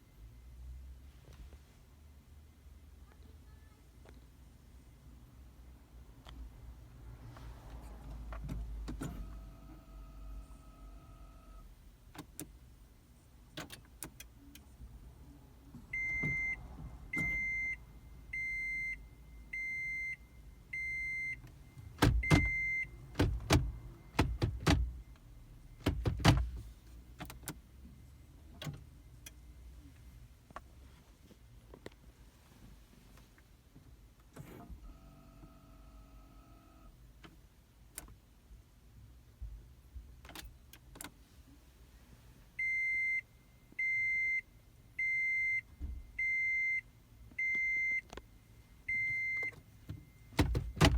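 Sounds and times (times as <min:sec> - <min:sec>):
electronic warning beeps: 0:48.9 - 0:50.2.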